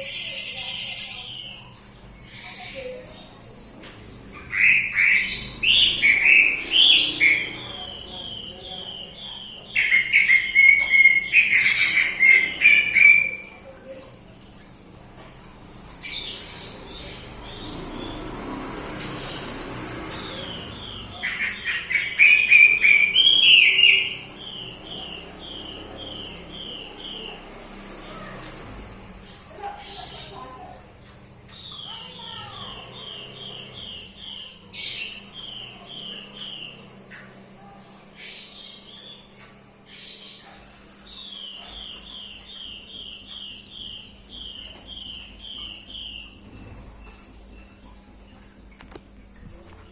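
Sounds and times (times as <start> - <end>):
songbird singing: 0.0 - 14.1, 20.1 - 28.3.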